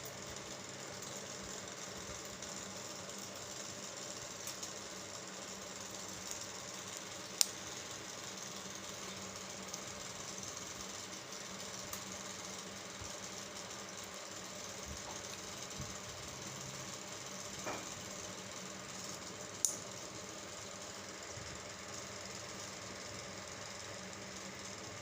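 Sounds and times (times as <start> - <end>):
background hum and hiss: 0.0 - 25.0.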